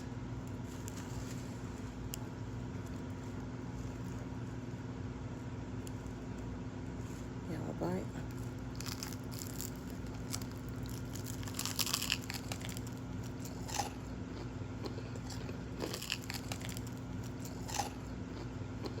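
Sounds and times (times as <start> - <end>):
steady low hum: 0.0 - 19.0
crunchy chicken chewing: 8.2 - 19.0.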